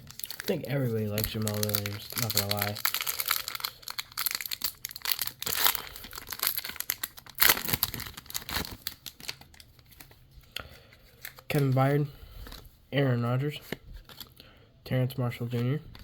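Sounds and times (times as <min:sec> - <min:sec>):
plastic wrapper crinkling and tearing: 0:00.0 - 0:10.3, 0:11.0 - 0:11.8, 0:13.6 - 0:14.4.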